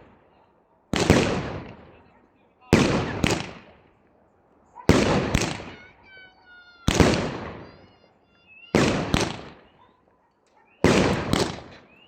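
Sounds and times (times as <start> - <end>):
firework bangs: 0.9 - 2.1, 2.7 - 3.9, 4.9 - 9.8, 10.8 - 12.0.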